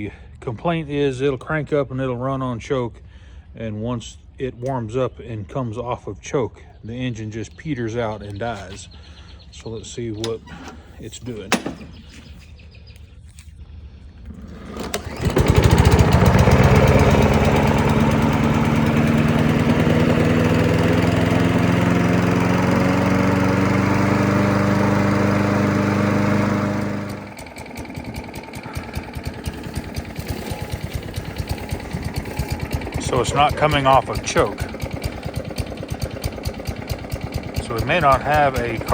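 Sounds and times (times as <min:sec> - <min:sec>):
lawn mower engine running: 0:07.9 - 0:13.5, 0:14.1 - 0:38.9.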